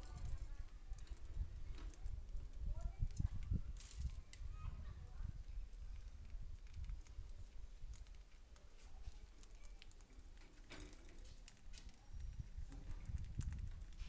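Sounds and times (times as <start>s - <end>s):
small birds chirping: 5.4s - 13.6s.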